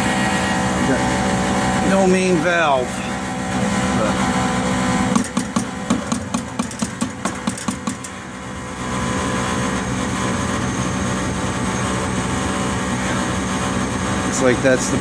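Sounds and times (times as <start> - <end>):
exhaust fan humming: 0.0 - 15.0.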